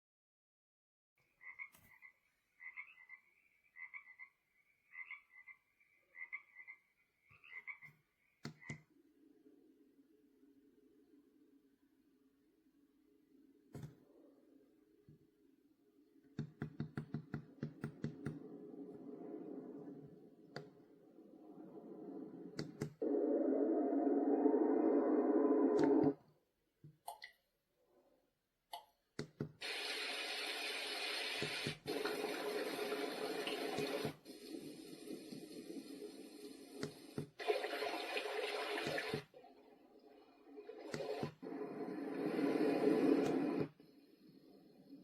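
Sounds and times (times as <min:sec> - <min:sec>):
soft noise: 0:17.8 - 0:26.2
white noise hiss: 0:40.8 - 0:43.8.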